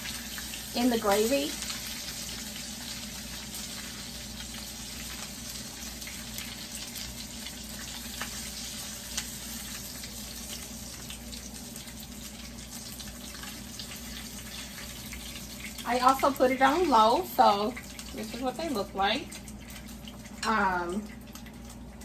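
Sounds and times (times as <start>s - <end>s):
meat sizzling in a skillet: 0.0s - 22.0s.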